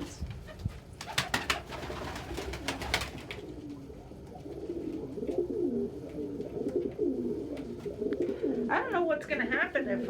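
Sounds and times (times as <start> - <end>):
pigeons cooing: 1.2 - 9.0.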